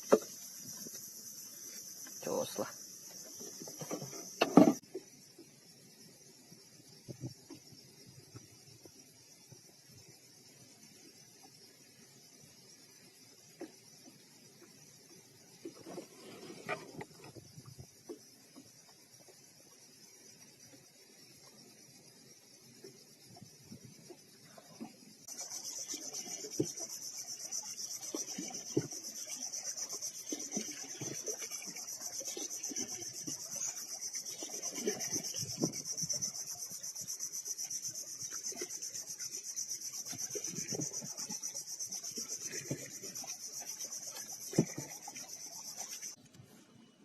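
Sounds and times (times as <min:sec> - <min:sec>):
insect buzzing: 0:25.2 - 0:46.2.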